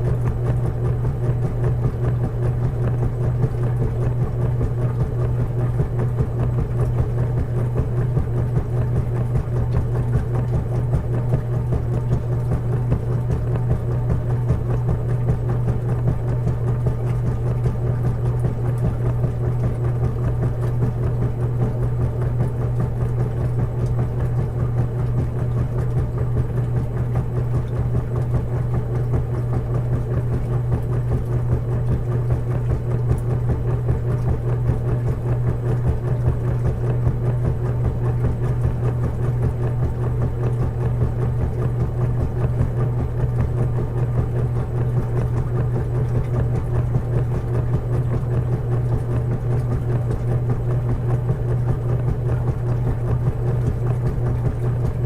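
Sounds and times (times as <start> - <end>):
washing machine humming: 0.0 - 55.0.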